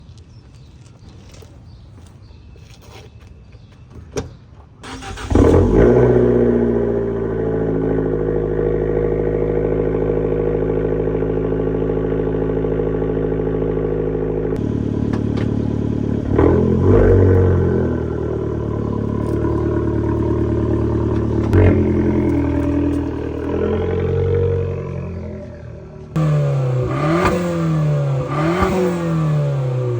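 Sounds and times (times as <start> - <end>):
car engine starting and idling: 4.8 - 29.9
engine revving blips: 14.6 - 29.9.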